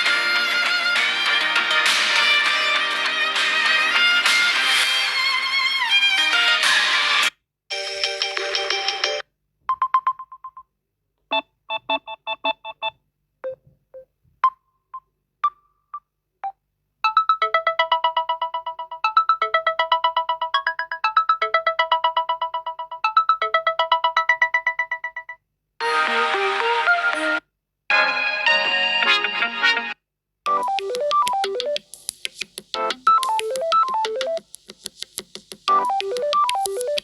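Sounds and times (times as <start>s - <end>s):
dense ringtone: 30.5s - 31.9s, 32.8s - 34.5s, 35.7s - 37.0s
plucked ringtone melody: 30.5s - 32.0s, 32.8s - 34.6s, 35.7s - 37.0s
electronic beep patterns: 30.5s - 37.0s.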